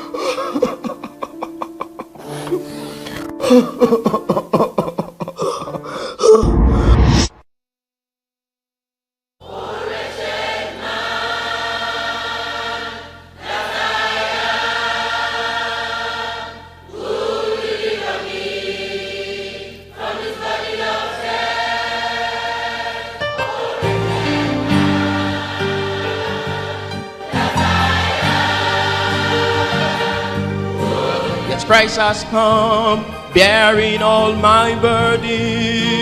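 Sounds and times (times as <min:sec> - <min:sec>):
gospel choir singing: 0:09.4 - 0:36.0
bass line: 0:30.9 - 0:36.0.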